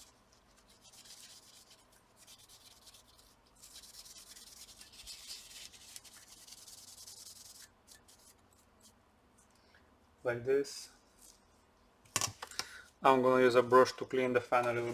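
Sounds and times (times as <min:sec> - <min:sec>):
soft hissy scrubbing: 0:13.0 - 0:14.9.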